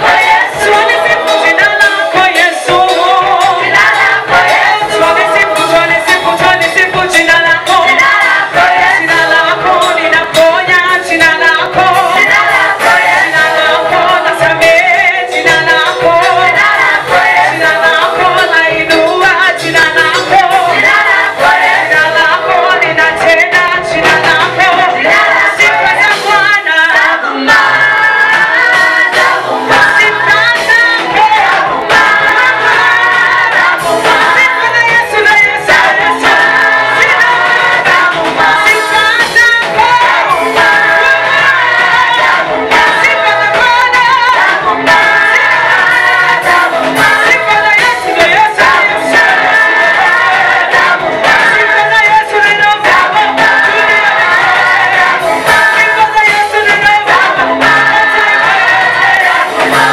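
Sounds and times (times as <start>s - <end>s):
band with bass and beat: 0.0s - 59.9s
choir singing gospel song: 0.0s - 59.9s.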